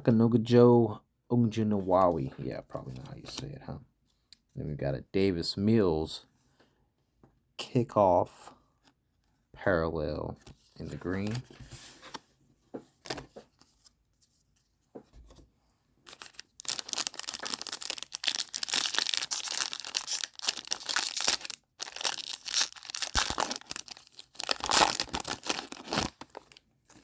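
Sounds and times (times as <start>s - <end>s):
foil wrapper tearing and crinkling: 16.1s - 27.0s.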